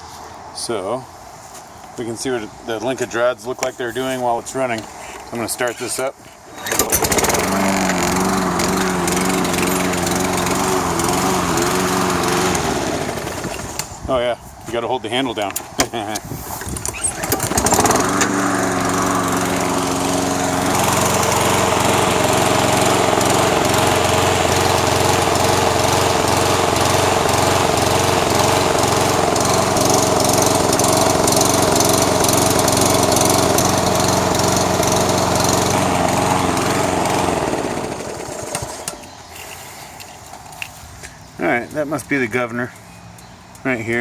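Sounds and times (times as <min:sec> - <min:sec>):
lawn mower engine running: 0:06.5 - 0:14.0, 0:16.1 - 0:40.8.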